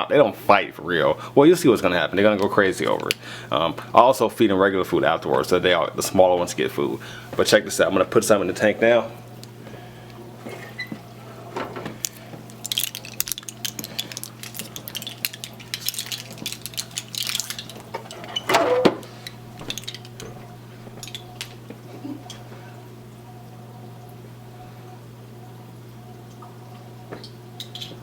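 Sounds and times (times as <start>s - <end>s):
steady low hum: 0.0s - 27.6s
plastic tray clicking and crackling: 12.0s - 18.5s.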